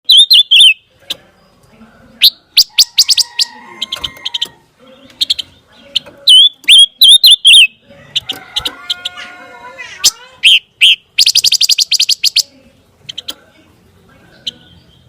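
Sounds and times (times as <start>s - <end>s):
songbird chirps and whistles: 0.0s - 0.9s, 5.2s - 9.2s, 10.0s - 12.5s.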